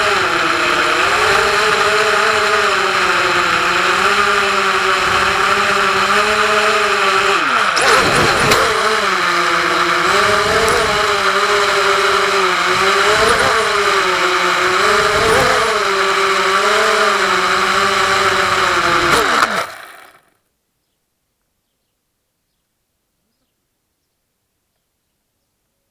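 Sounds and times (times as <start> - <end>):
drone motors whining: 0.0 - 20.3.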